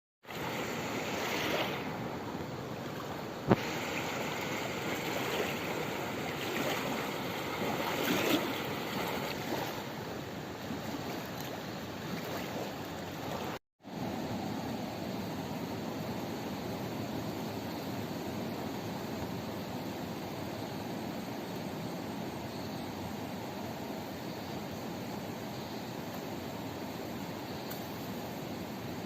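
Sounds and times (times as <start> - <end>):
rushing water: 0.2 - 13.6.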